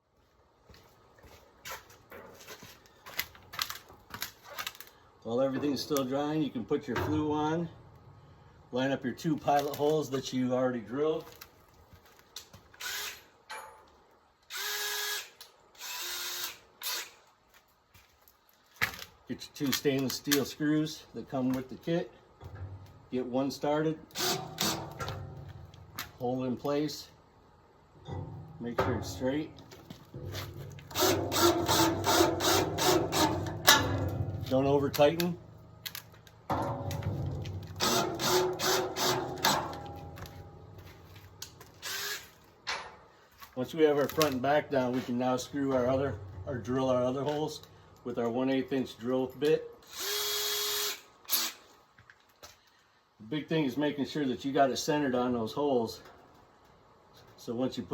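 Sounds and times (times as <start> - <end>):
electric drill whining: 14.5 - 17.1, 30.9 - 33.4, 41.8 - 42.3, 49.9 - 51.6.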